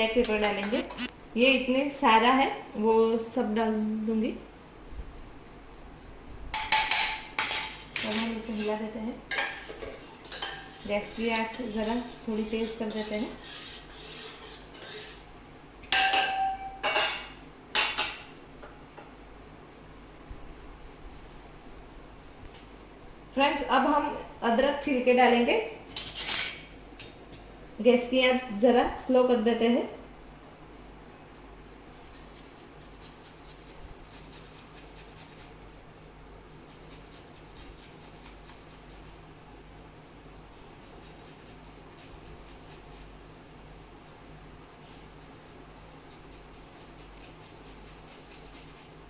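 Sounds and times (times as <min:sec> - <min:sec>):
steady low hum: 0:00.0 - 0:49.0
scraping ginger skin: 0:10.8 - 0:15.3, 0:31.8 - 0:35.6, 0:36.6 - 0:39.4, 0:40.7 - 0:43.5, 0:44.1 - 0:49.0.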